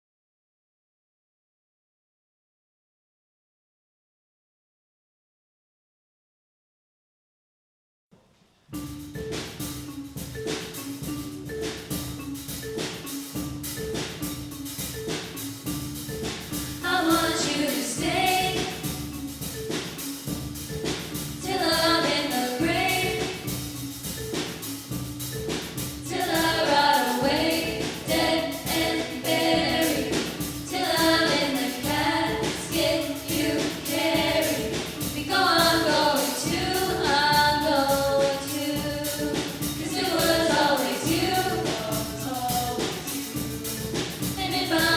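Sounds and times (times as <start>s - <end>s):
repeating instrumental accompaniment: 8.8s - 44.9s
choir singing: 16.8s - 19.0s, 21.4s - 23.6s, 26.1s - 43.2s, 44.4s - 44.9s.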